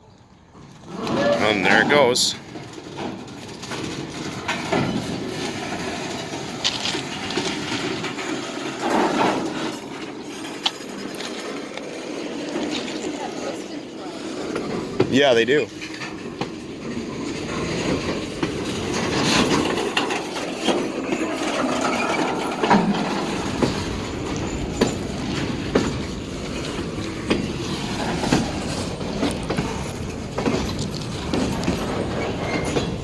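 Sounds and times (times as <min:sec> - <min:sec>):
wheel squeal on rail: 0:00.8 - 0:02.2, 0:03.9 - 0:11.5, 0:15.7 - 0:33.0
train wheels knocking on rail joints: 0:12.3 - 0:33.0.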